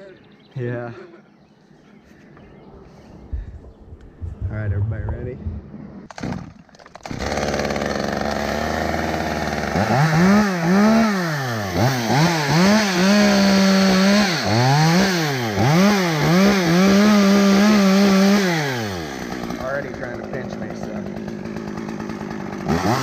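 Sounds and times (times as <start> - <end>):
chainsaw idling and revving: 6.1 - 23.0.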